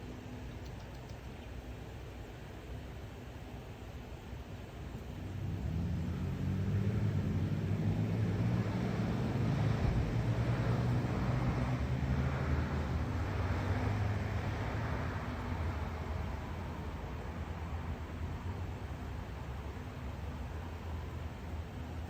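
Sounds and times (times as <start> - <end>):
passing vehicle engine hum: 5.0 - 22.0.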